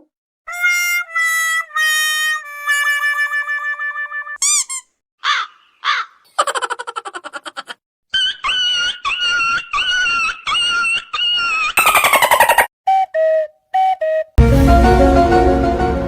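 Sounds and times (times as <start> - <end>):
repeated steady-pitch calls: 0.5 - 6.1, 8.1 - 14.3
crow cawing: 5.2 - 6.4.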